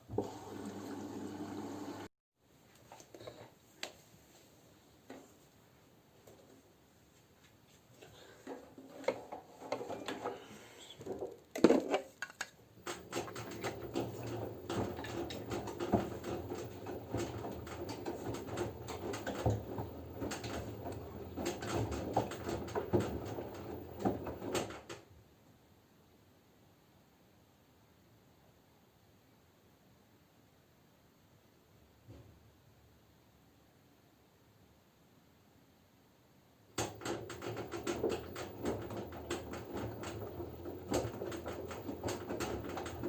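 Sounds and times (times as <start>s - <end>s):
washing machine motor hum: 0.0s - 2.1s, 12.8s - 24.9s, 36.8s - 43.0s
laundry tumbling and sloshing: 12.9s - 24.8s, 36.9s - 43.0s.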